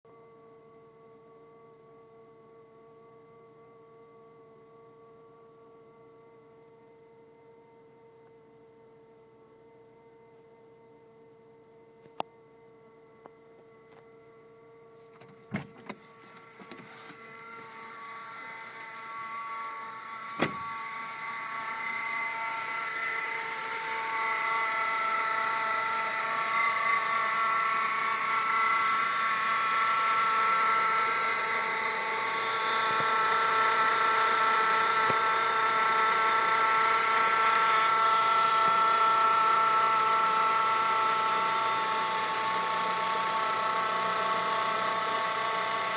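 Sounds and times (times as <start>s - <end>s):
belt and pulley whine: 14.9s - 45.9s.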